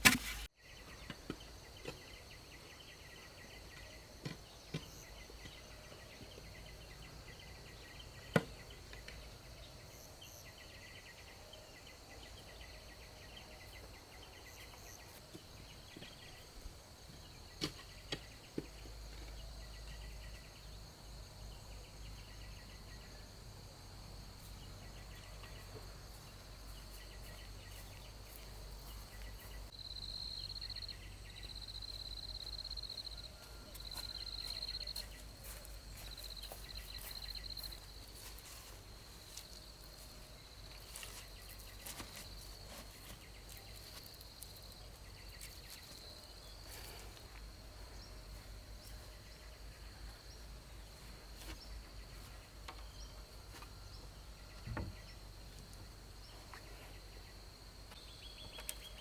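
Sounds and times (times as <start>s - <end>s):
insects trilling: 14.2s - 59.0s.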